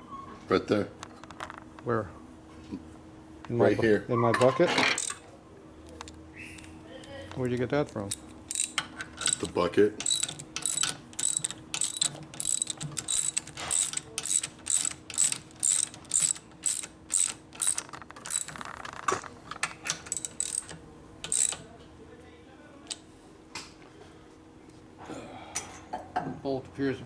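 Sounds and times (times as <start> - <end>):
ratchet wrench clicking: 5.0 - 5.2, 7.9 - 19.0, 19.9 - 21.6.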